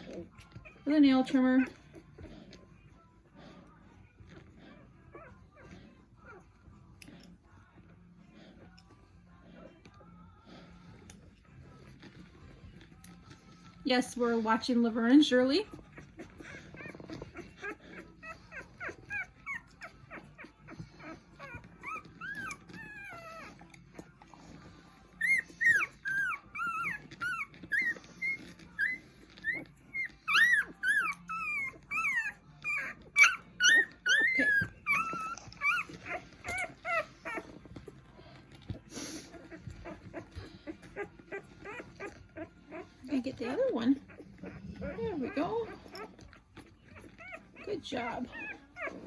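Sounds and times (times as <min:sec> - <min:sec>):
puppy crying in high squeals: 0:25.2 - 0:37.4.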